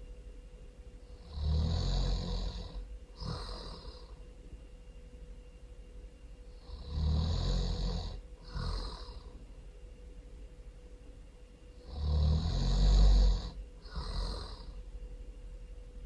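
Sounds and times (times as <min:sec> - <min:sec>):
loud rasping snoring: 0:01.2 - 0:04.2, 0:06.6 - 0:09.4, 0:11.8 - 0:14.8.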